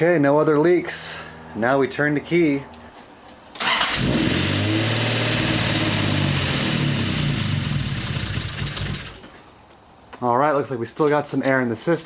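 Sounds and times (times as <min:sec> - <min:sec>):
car engine starting and idling: 0:03.5 - 0:09.4.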